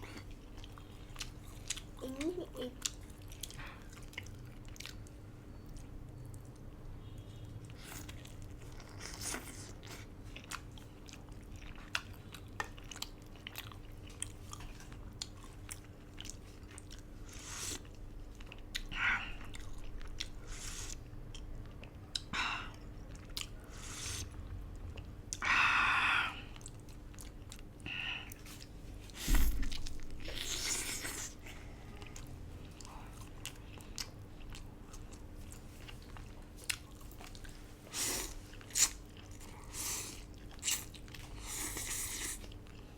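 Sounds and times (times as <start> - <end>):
wet chewing and mouth smacks: 0.2 - 6.7, 26.6 - 31.4, 32.0 - 42.9.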